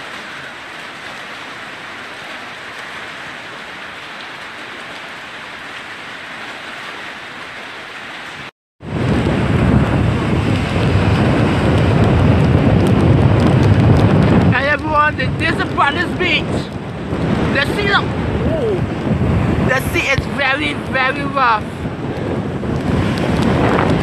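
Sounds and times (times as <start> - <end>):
heavy rain hissing: 0.0 - 24.0
gusting wind buffeting microphone: 8.8 - 24.0.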